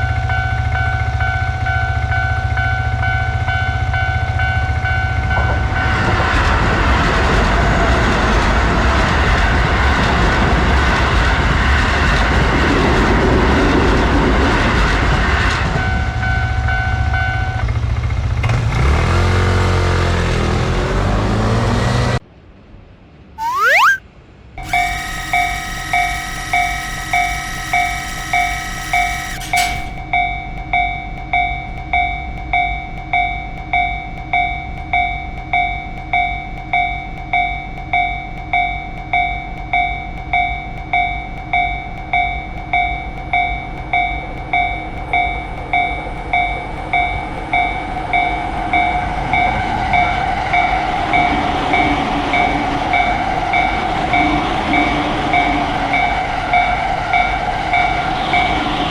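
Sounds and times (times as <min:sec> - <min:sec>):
crossing warning bell ringing: 0:00.0 - 0:05.9, 0:24.6 - 0:58.7
train rumbling: 0:00.0 - 0:22.0, 0:31.9 - 0:58.9
held electronic tone: 0:23.4 - 0:24.0, 0:24.6 - 0:29.6.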